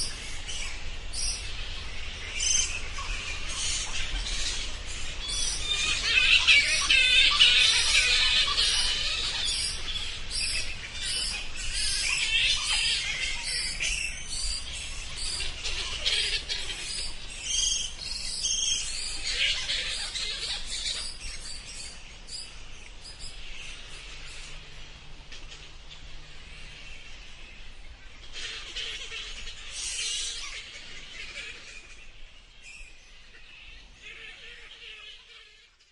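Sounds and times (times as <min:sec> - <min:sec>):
bats squeaking and chittering: 0:00.0 - 0:24.6.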